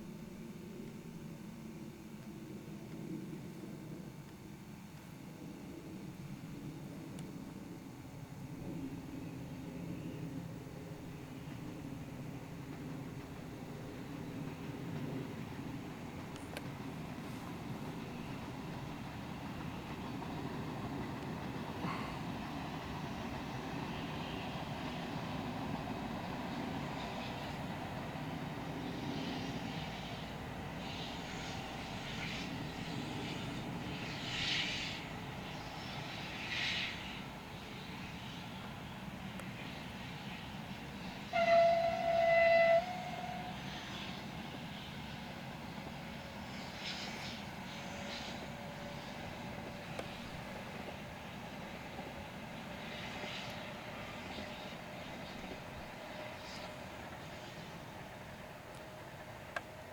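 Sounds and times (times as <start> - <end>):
train rumbling: 0.0 - 59.9
train horn blast: 41.1 - 44.6.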